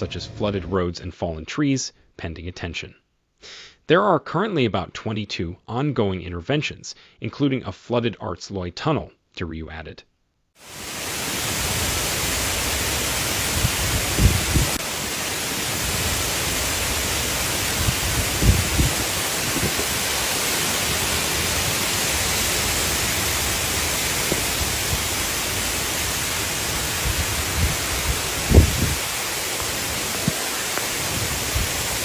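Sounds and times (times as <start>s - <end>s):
heavy rain: 10.6s - 32.0s
wind: 10.6s - 32.0s
wind buffeting microphone: 13.5s - 14.8s, 17.6s - 20.3s, 26.9s - 29.2s.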